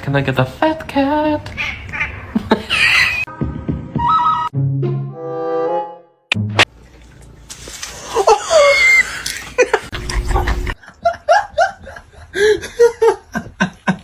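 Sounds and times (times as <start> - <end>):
person laughing: 8.0 - 14.0.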